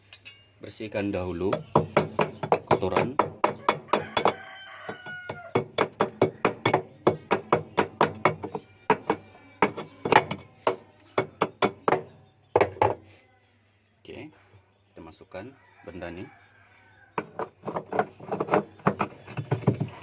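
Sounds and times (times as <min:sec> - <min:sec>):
metal tool scraping and tapping: 0:00.0 - 0:00.5.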